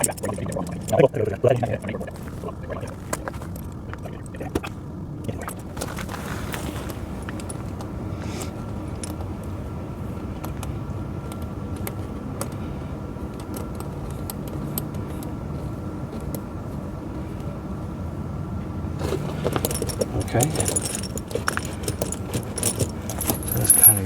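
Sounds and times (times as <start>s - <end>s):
steady low rumble: 0.0s - 10.4s
tire chain links clinking: 2.1s - 9.4s, 19.0s - 24.0s.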